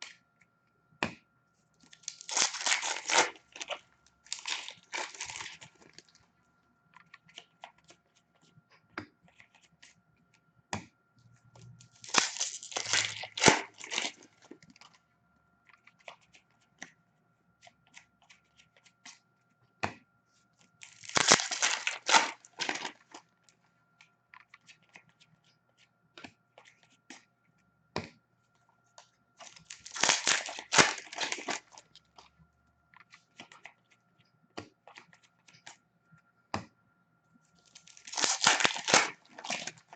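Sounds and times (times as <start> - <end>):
cards clicking and rustling: 1.8 - 6.1, 12.0 - 15.0, 20.8 - 23.6, 29.0 - 32.3, 37.6 - 39.9
foil packs tearing and crumpling: 1.9 - 6.1, 12.0 - 14.5, 20.8 - 23.2, 29.4 - 32.0, 37.7 - 39.9.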